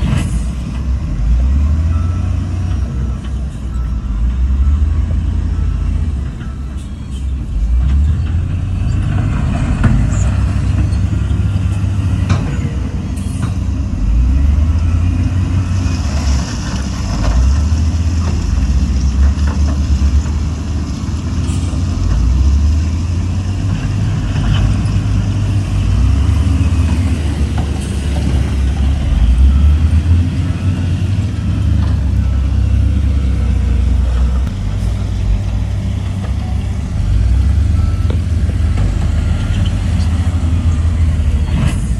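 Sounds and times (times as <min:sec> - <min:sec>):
heavy diesel engine running: 0:00.0 - 0:41.9.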